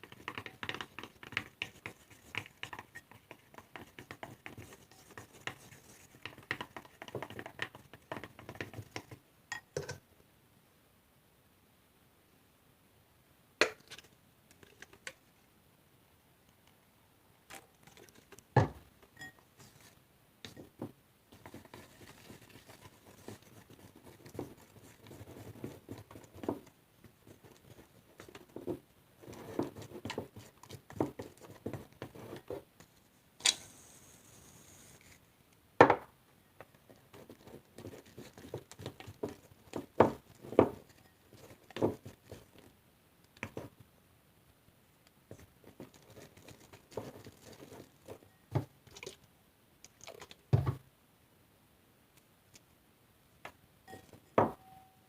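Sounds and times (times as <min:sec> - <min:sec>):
short hiss: 0:33.4 - 0:35.0.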